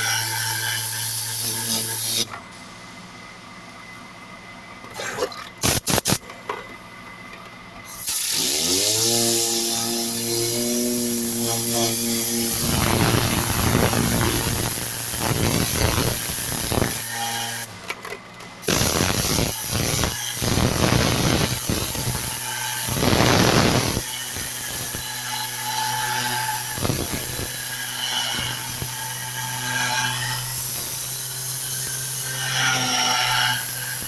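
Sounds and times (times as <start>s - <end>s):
air gun hissing: 5.6s - 6.2s, 7.9s - 17.1s, 18.6s - 25.0s
compressed air blasts: 5.6s - 6.2s, 8.0s - 17.1s, 18.6s - 25.0s.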